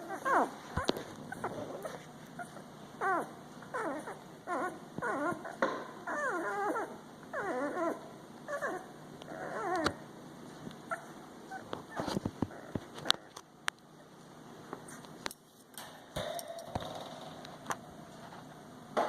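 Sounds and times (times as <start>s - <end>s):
puppies whimpering: 0.0s - 10.1s, 10.8s - 13.2s.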